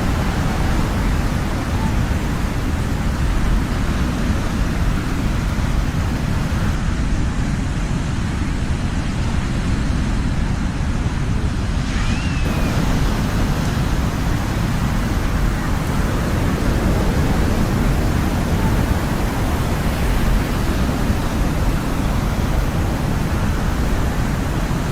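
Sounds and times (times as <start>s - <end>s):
ocean waves rushing: 0.0s - 6.8s, 11.7s - 24.9s
faint high chirp: 12.0s - 12.8s.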